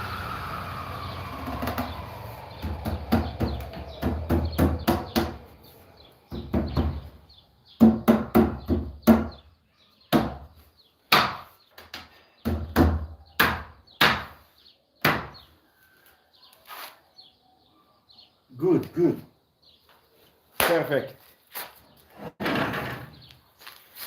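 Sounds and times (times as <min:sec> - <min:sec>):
sharp blows on wood: 0:12.5 - 0:14.4.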